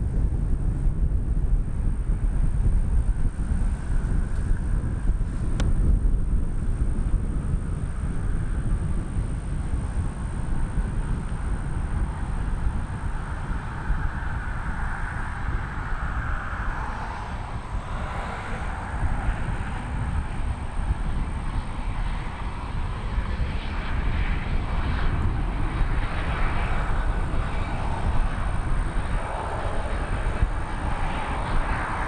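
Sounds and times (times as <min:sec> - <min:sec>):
jet engines rumbling hiss: 0:07.4 - 0:32.0.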